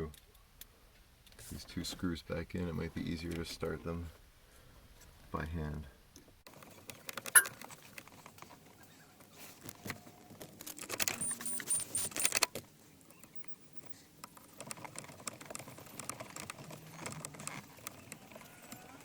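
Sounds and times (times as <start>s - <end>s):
small metallic clicks and rattles: 6.5s - 8.6s, 9.6s - 19.0s.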